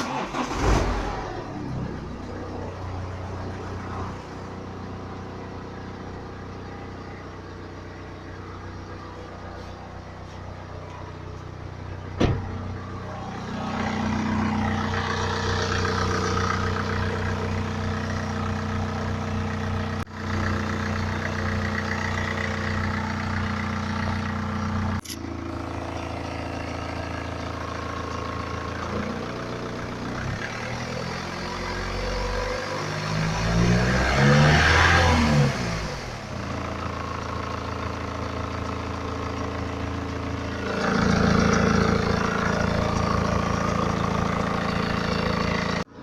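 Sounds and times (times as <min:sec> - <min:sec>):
diesel engine idling: 0:00.0 - 0:32.3, 0:36.0 - 0:46.0.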